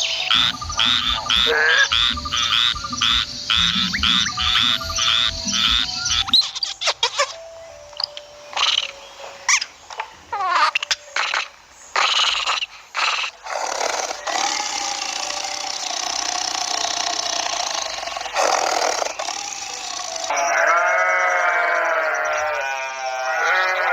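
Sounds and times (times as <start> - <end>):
long harsh animal call: 0.0 - 6.6, 13.1 - 23.9
animal calls: 0.0 - 7.4, 8.6 - 23.9.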